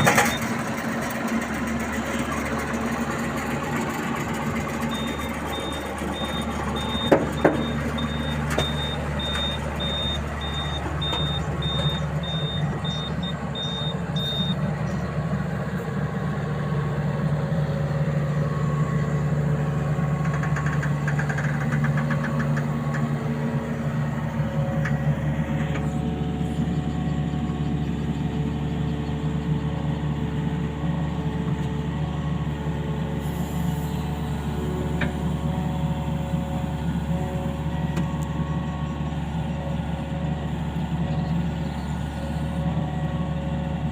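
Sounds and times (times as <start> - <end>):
diesel engine running: 0.0 - 43.9
high warning alarm beeping: 5.0 - 14.6.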